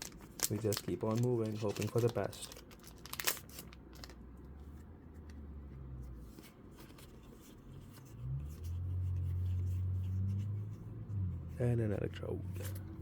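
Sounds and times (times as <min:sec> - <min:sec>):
trading cards rustling and ticking: 0:00.0 - 0:04.5
low steady hum: 0:00.0 - 0:13.0.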